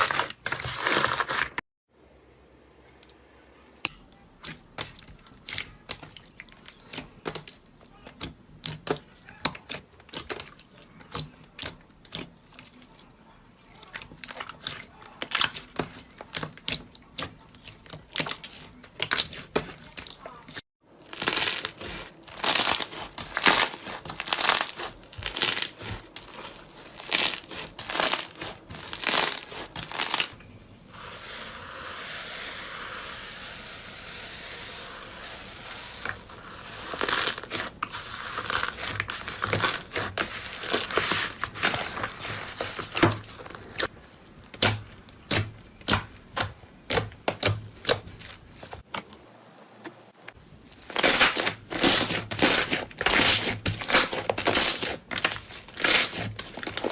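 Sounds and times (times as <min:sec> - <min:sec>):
slime crinkling: 0:00.0 - 0:01.6, 0:13.7 - 0:30.4, 0:33.2 - 0:56.9.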